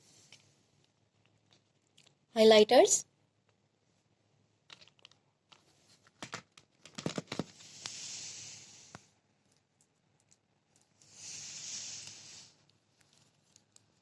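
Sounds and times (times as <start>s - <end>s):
packaging clicks and taps: 4.7s - 7.5s
packaging rustling and tearing: 4.7s - 8.0s.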